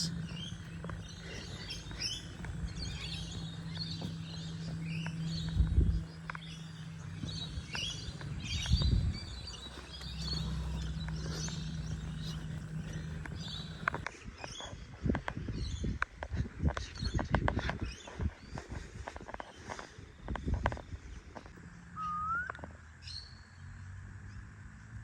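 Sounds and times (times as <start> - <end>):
steady low hum: 0.0 - 14.3
birds chirping: 0.0 - 23.6.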